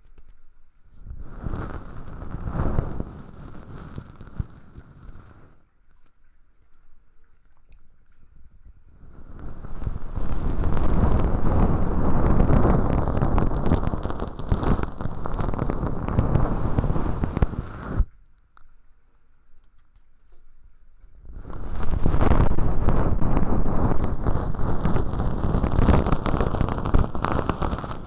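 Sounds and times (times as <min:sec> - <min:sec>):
ear-cleaning tool crackling: 0:09.4 - 0:18.0, 0:21.5 - 0:28.0.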